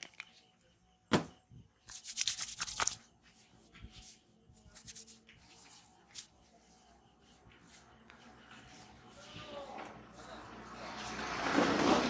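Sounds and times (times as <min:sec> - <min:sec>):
hands rubbing skin: 0:01.9 - 0:09.3
hands patting strokes: 0:03.9 - 0:10.8.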